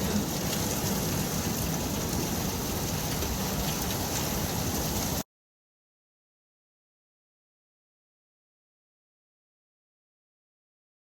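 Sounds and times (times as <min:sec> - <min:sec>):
heavy rain pouring: 0:00.0 - 0:05.3.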